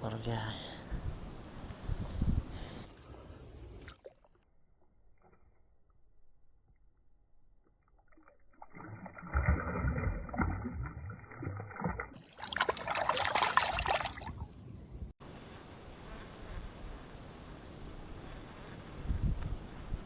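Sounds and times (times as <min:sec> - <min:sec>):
water sloshing and splashing: 0:02.9 - 0:04.4, 0:07.6 - 0:14.9.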